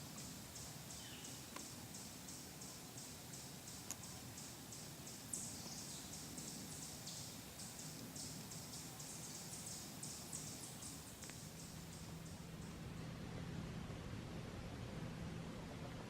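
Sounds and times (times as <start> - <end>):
insects chirping: 0.0 - 13.1
faint low hum: 0.0 - 16.0.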